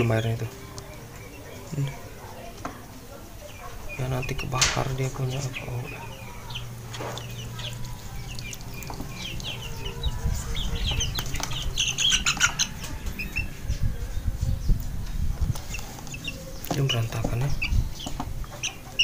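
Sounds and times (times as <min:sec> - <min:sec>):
high bird chirps: 0:03.4 - 0:19.0.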